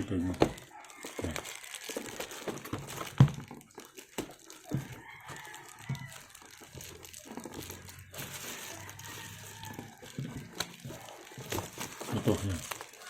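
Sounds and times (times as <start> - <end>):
packaging crinkling: 0.0 - 13.0
rooster crowing: 0.4 - 2.5, 4.7 - 7.0, 7.7 - 13.0.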